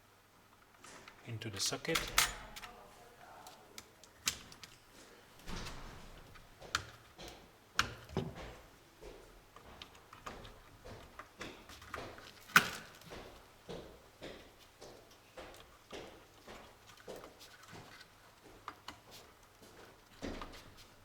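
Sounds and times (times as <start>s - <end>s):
clicks and knocks of metal parts: 1.8s - 2.8s.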